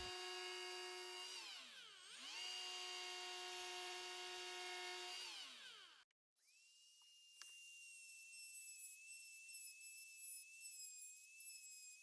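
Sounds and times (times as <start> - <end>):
die grinder whining: 0.0 - 12.0.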